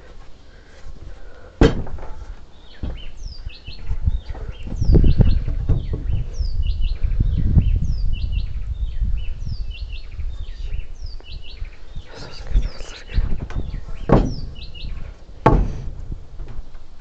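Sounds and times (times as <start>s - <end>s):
birds chirping: 0.0s - 17.0s
heavy knocks on wood: 1.6s - 2.2s, 2.8s - 3.1s, 4.3s - 6.4s, 13.3s - 16.7s
low rumble: 11.5s - 16.7s.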